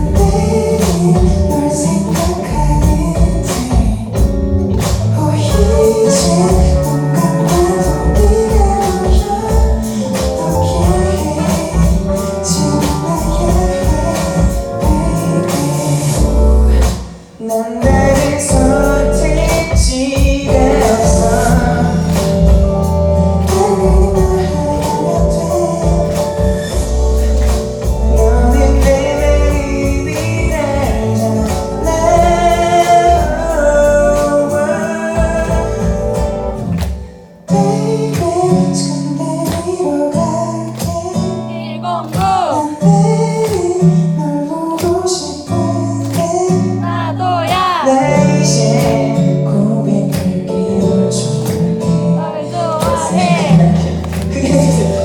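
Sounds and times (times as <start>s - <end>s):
person singing: 0.0s - 36.1s, 37.5s - 55.0s
live band music: 0.0s - 55.0s.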